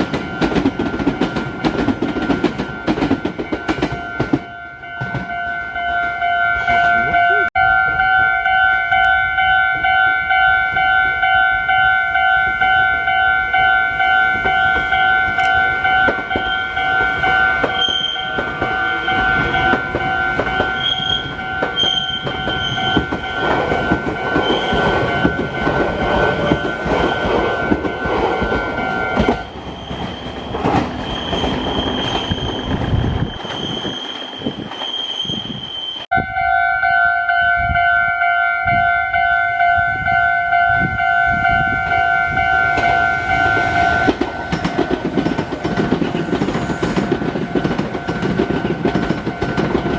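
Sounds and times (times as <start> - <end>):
train wheels clattering over rail joints: 0.0 - 5.4, 14.4 - 34.9, 42.7 - 49.9
level crossing bell ringing: 0.0 - 29.5, 36.1 - 44.2
high wheel squeals: 16.3 - 27.4, 28.6 - 36.1.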